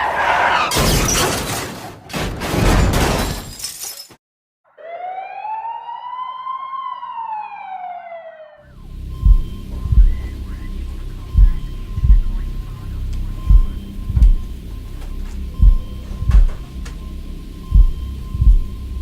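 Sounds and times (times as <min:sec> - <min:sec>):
car crash crunching and shattering: 0:00.3 - 0:04.2
siren wail: 0:04.7 - 0:19.0
low hum: 0:08.7 - 0:19.0
heavy thump: 0:13.5 - 0:17.0.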